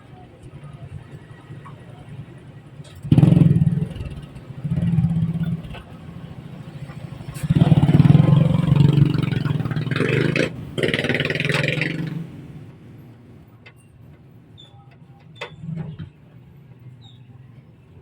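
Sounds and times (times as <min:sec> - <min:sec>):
engine running in bursts: 0:02.9 - 0:12.6.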